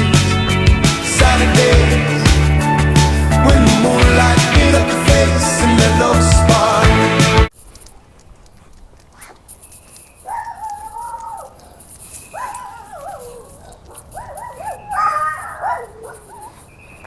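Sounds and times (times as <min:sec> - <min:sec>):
puppy whining: 0:10.2 - 0:16.7.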